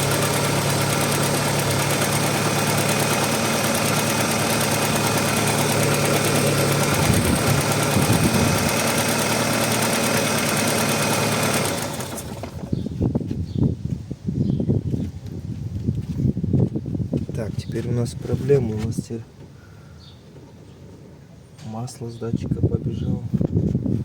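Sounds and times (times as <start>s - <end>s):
car engine idling: 0.0s - 13.0s.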